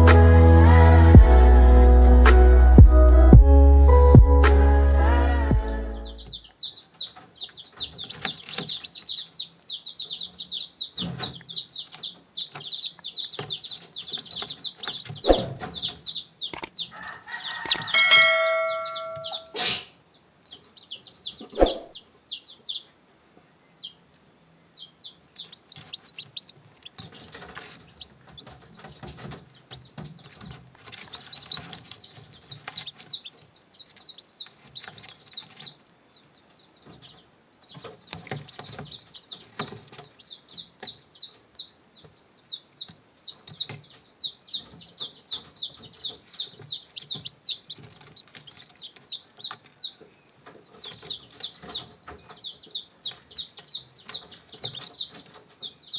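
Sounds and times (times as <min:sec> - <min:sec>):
chicks peeping: 0:00.0 - 0:55.9
ringing chime-like tone: 0:17.7 - 0:19.6.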